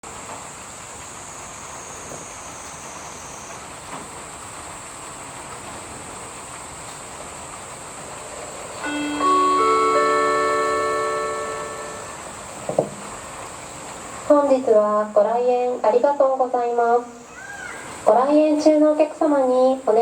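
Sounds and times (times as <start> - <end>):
rain falling: 0.0 - 15.3.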